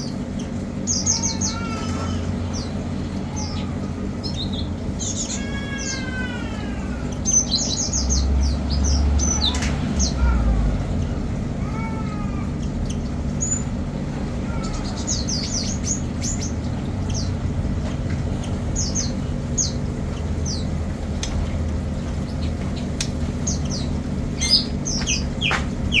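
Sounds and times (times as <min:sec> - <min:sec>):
small birds chirping: 0:00.0 - 0:26.0
steady low hum: 0:00.0 - 0:26.0
lower falling bird calls: 0:18.3 - 0:26.0.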